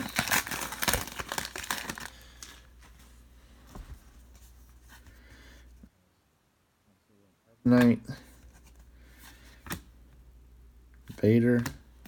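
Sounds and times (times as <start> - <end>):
foil wrapper crinkling: 0.0 - 2.7.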